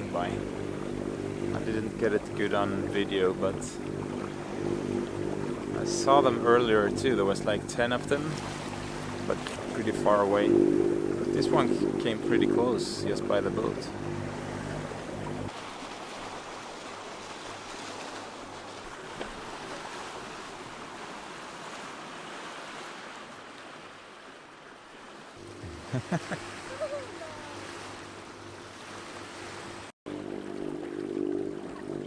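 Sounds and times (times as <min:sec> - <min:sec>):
low steady hum: 0:00.0 - 0:15.5
water splashing along a hull: 0:00.0 - 0:32.0
wind: 0:00.0 - 0:32.0.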